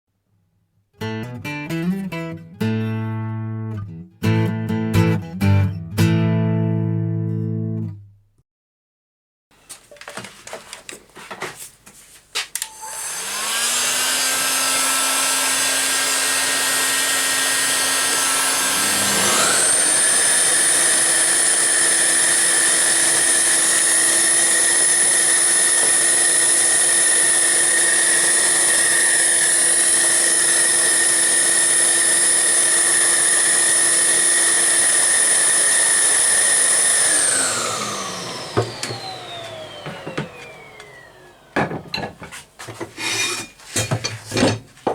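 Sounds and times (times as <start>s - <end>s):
wood lathe motor whining: 12.6s - 42.4s.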